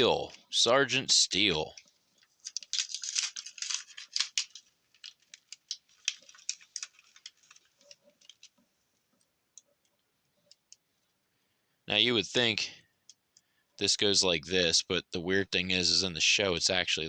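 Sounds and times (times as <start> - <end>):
plastic packaging crackling: 1.7 - 8.6.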